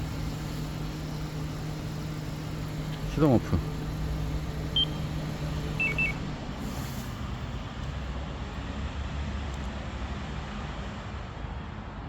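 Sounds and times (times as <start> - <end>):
car engine idling: 0.0 - 7.6
short high electronic beeps: 5.8 - 6.2.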